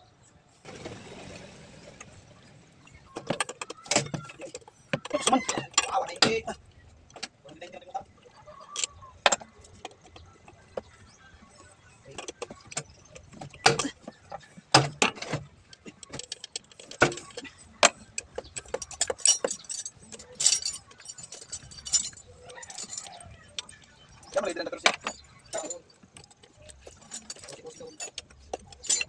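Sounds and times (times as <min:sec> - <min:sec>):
jingling clatter: 0:08.4 - 0:29.0
metal tools clinking: 0:11.6 - 0:29.0.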